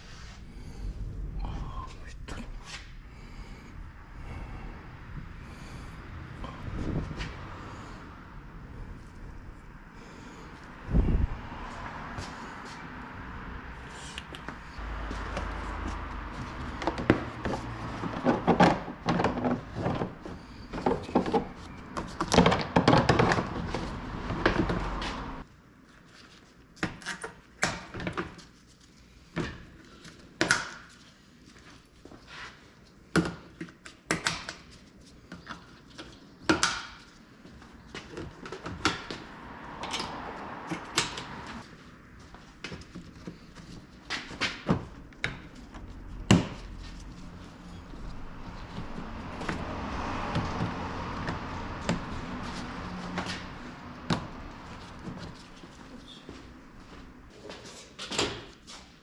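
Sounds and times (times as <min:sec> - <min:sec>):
steady low rumble: 0:00.0 - 0:16.8.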